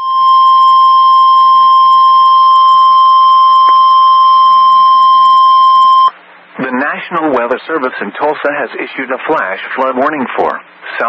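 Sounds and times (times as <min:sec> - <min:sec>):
loud steady warning alarm tone: 0:00.0 - 0:06.2.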